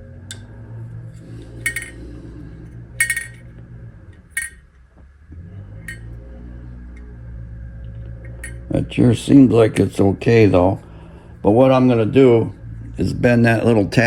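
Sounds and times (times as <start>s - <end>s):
steady low hum: 0.0s - 14.0s
light metallic clinks: 1.6s - 2.1s, 4.3s - 4.6s, 8.2s - 8.7s.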